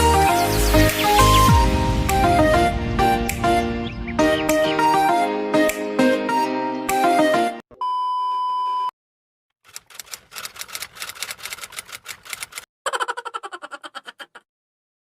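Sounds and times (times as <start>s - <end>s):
rapid clicks: 9.6s - 12.7s.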